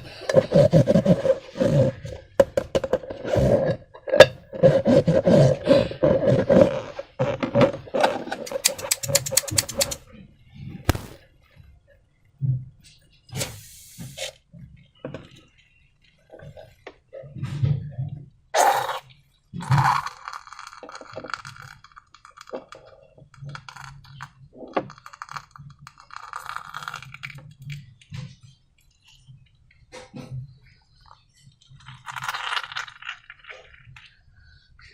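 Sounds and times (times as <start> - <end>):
clicks and taps: 8.5 - 10.0
sharp knocks: 10.9 - 11.2.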